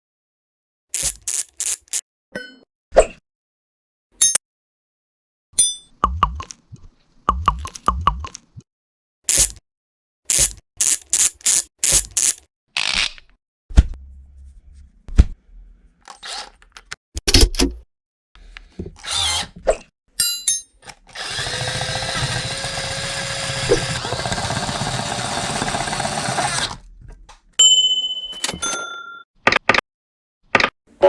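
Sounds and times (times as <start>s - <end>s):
tools clicking and scraping: 1.0s - 2.0s, 4.2s - 4.4s, 9.3s - 9.6s, 10.3s - 13.0s, 20.2s - 21.2s
power tool running: 21.1s - 26.8s.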